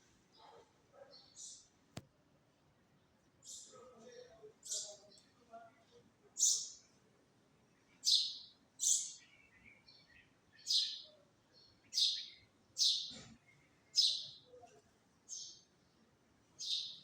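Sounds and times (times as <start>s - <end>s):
bird chirping: 3.4s - 3.8s, 4.6s - 5.3s, 6.4s - 6.8s, 8.0s - 14.6s, 15.3s - 15.7s, 16.6s - 17.0s.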